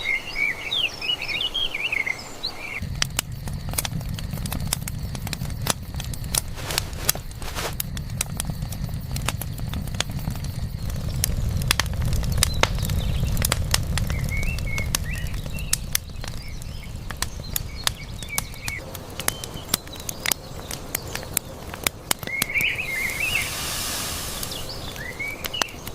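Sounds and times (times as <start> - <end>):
small birds chirping: 0.0 - 25.9
brief hissing rush: 22.7 - 25.3.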